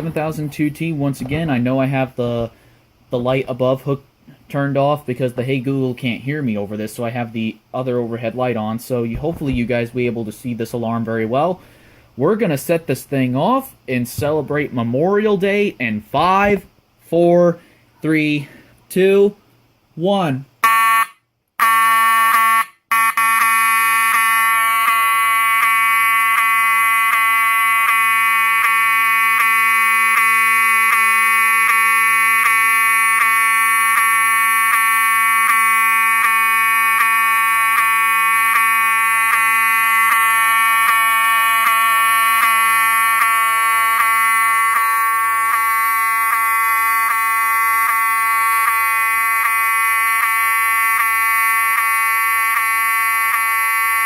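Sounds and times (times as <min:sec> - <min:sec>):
buzzing alarm horn: 0:20.6 - 0:54.0.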